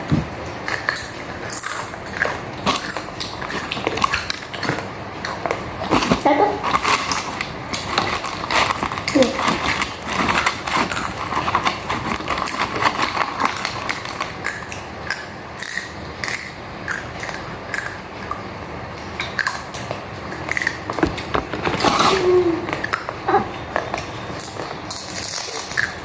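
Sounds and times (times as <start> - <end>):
food crunching while chewed: 0.0 - 26.0.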